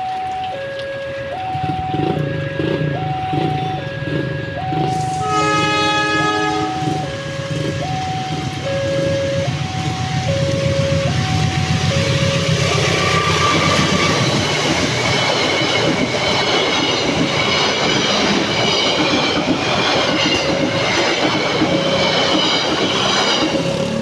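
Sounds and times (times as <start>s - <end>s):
rain: 0.0s - 15.4s
level-crossing alarm two tones: 0.0s - 24.0s
train coaches running past: 1.6s - 24.0s
wheels squealing on rails: 2.6s - 24.0s.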